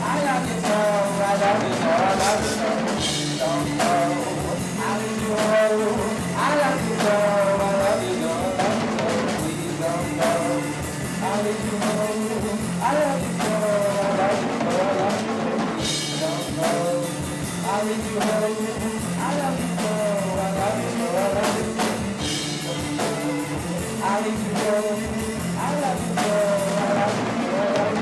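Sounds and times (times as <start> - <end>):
drum kit beating: 0.0 - 28.0
guitar: 0.0 - 28.0
sung melody: 0.0 - 28.0.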